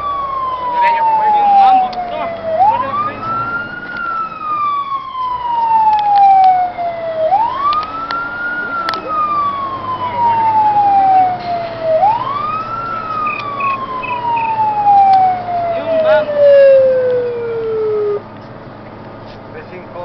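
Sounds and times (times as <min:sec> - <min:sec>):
fire engine siren wailing: 0:00.0 - 0:18.4
sharp clicks: 0:12.8 - 0:15.3.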